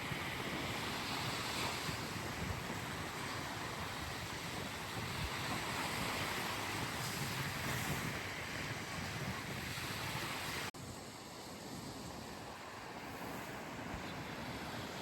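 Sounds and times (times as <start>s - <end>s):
wind buffeting microphone: 0.0s - 10.7s
sea waves washing: 0.0s - 15.0s.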